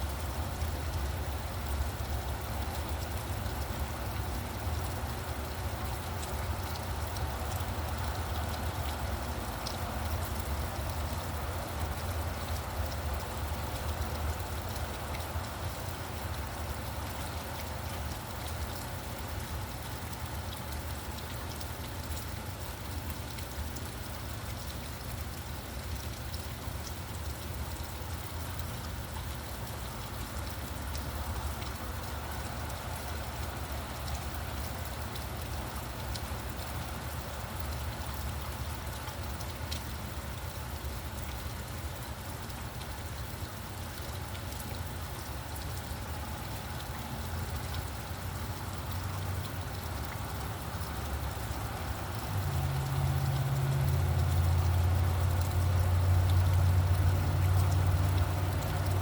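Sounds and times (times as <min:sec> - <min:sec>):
raindrop ticks: 0:00.0 - 0:59.0
steady rainfall: 0:00.0 - 0:59.0
road traffic rumble: 0:50.2 - 0:59.0.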